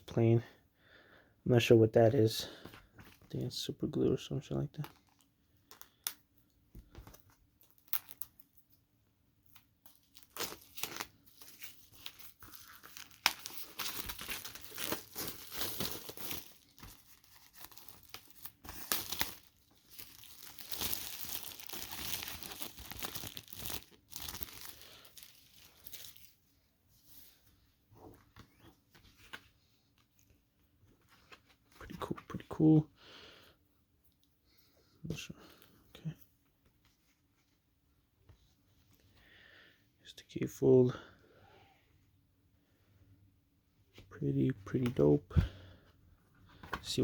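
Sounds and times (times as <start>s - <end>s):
plastic wrap tearing and crumpling: 7.6s - 8.4s, 9.8s - 26.4s.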